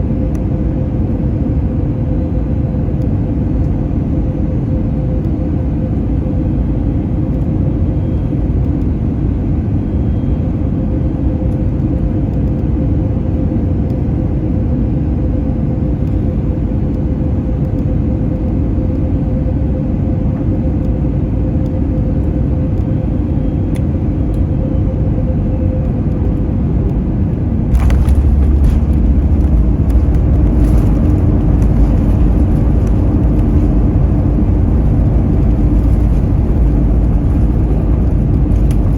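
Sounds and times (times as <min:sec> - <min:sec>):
airplane cabin engine rumble: 0:00.0 - 0:38.9
heavy low rumble and rattling: 0:20.8 - 0:38.9.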